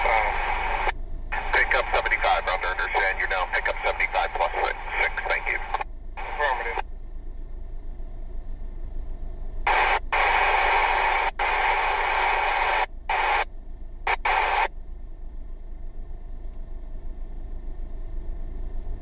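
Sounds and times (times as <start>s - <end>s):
radio static hiss bursts: 0.0s - 6.8s, 9.7s - 13.5s, 14.1s - 14.7s.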